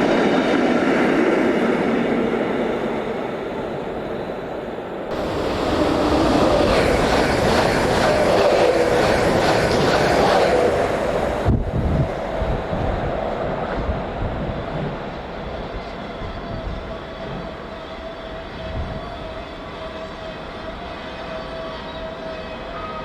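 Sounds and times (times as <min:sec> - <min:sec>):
train wheels rolling on rails: 0:05.1 - 0:22.9.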